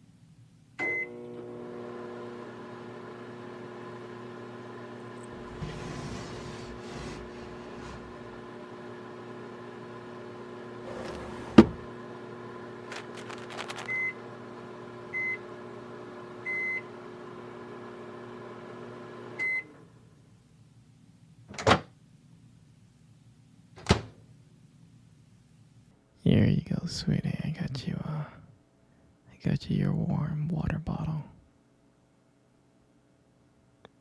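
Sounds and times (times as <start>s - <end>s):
microwave oven humming: 0.8s - 20.4s.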